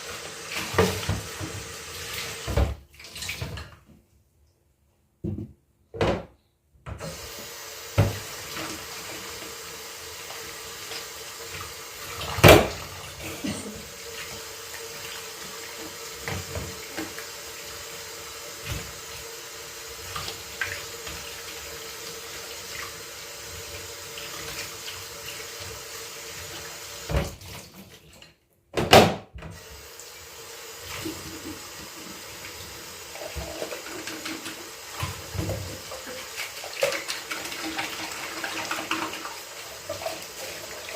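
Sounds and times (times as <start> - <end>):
tap running into sink: 0.5 - 2.8, 7.9 - 9.6, 10.3 - 12.9, 15.4 - 17.3.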